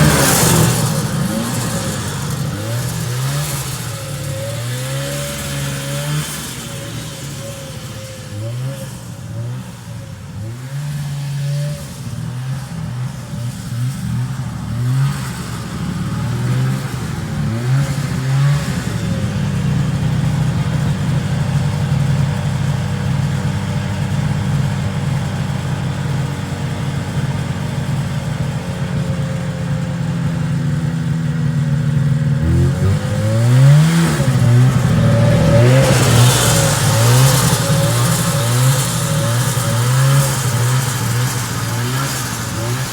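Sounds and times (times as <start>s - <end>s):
snowmobile engine revving: 0.0s - 42.9s.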